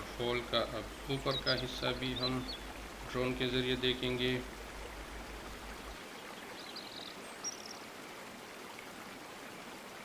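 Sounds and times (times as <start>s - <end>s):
waterfall rushing: 0.0s - 6.0s
bird chirping: 1.0s - 2.8s, 6.4s - 7.8s.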